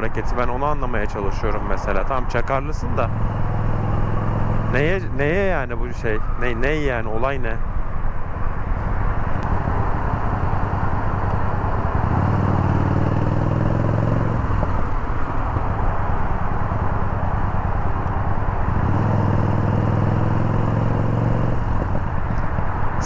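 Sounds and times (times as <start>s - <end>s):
wind and road noise: 0.0s - 23.0s
motorcycle engine running: 8.6s - 23.0s.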